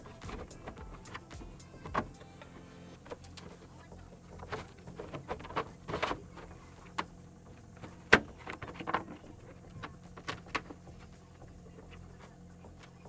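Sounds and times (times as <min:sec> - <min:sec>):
plastic guard clicking and scraping: 0:04.4 - 0:11.1.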